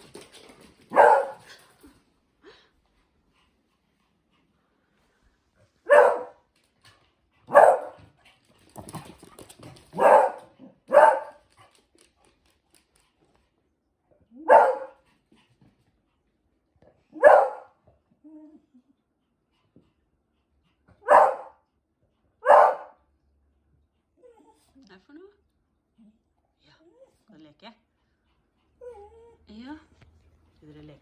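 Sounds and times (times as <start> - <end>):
dog barking: 0.9 - 1.5, 5.9 - 6.4, 7.5 - 8.0, 10.0 - 11.4, 14.4 - 15.0, 17.2 - 17.8, 21.0 - 21.6, 22.4 - 23.0.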